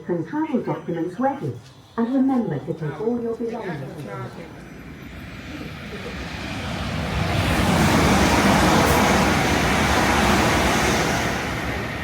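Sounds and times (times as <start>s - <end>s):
train wheels rushing on rails: 4.6s - 12.0s.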